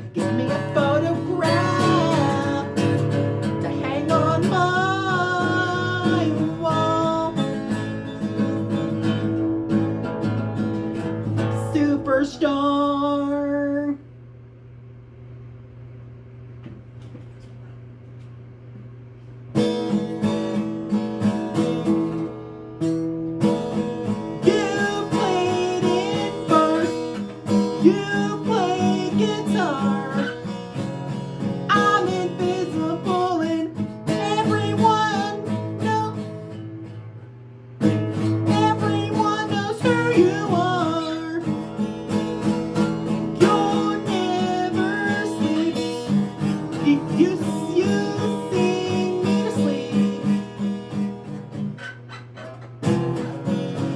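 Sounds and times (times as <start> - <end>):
person singing: 0.0 - 7.7, 11.4 - 14.0, 24.4 - 30.5, 31.7 - 36.3, 38.5 - 41.6, 43.3 - 50.6
acoustic guitar strumming: 0.0 - 13.9, 19.5 - 53.9.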